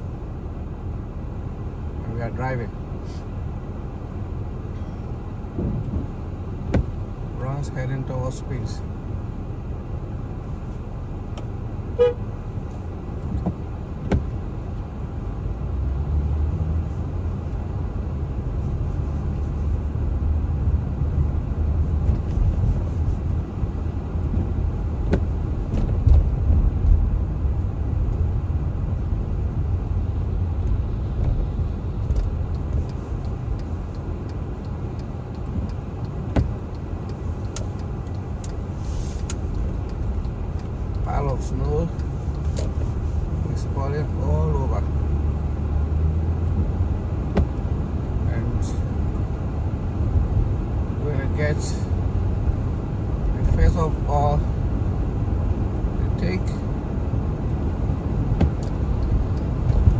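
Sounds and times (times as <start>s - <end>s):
car engine and tyres rumbling: 0.0s - 59.9s
car horn toot: 11.9s - 12.4s.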